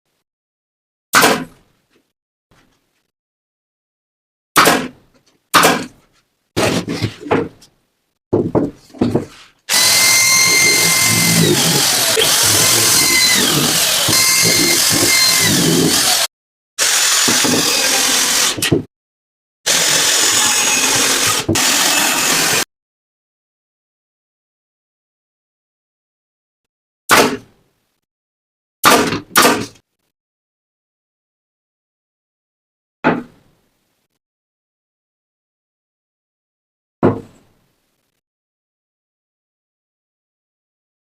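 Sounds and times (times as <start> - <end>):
power drill running: 9.7 - 18.6, 19.7 - 22.6.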